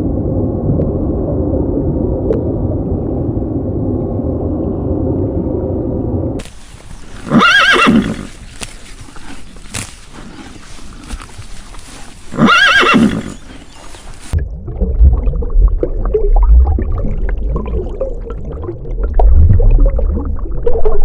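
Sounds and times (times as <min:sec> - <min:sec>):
muffled low noise: 0:00.0 - 0:07.1
horse whinnying: 0:07.1 - 0:08.4, 0:12.2 - 0:13.8.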